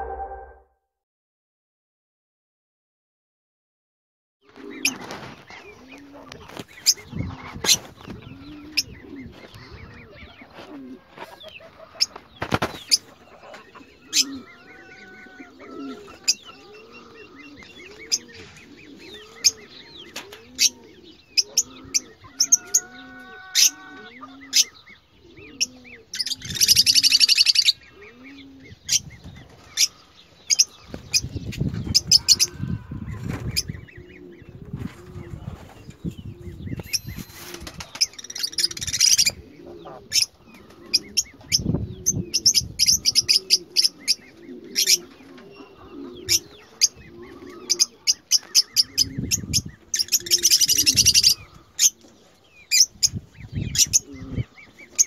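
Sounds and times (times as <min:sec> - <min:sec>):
birds chirping and shrieking: 0:04.5 - 0:55.0
low cooing: 0:13.6 - 0:27.2, 0:38.8 - 0:48.1.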